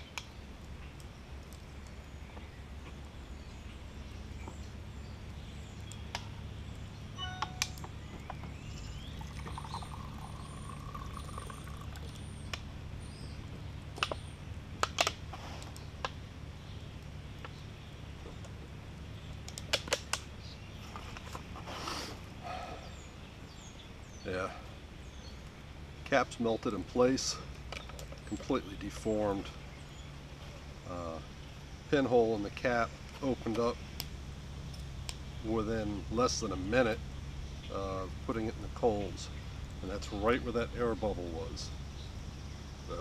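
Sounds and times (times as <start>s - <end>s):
faint bird chirps: 3.3s - 13.4s.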